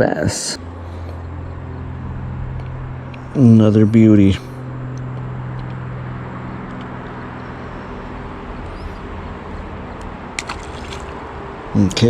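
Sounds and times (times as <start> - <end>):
river water flowing: 10.3 - 11.6.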